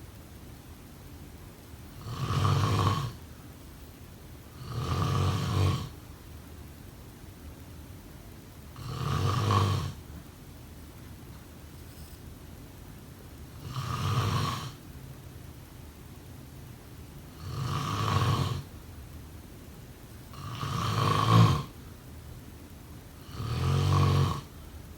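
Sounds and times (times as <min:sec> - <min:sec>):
person snoring: 0:13.6 - 0:14.8, 0:17.4 - 0:18.7, 0:20.3 - 0:21.7, 0:23.2 - 0:24.5.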